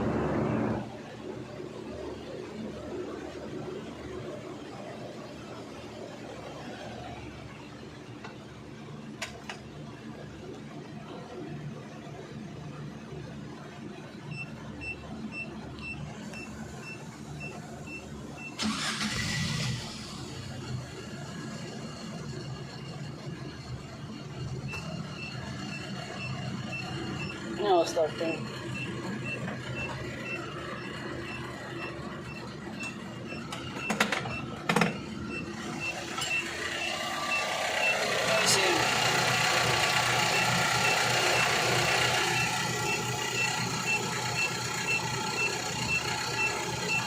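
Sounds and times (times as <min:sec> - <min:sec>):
truck engine starting: 0:18.5 - 0:21.1, 0:28.2 - 0:47.0.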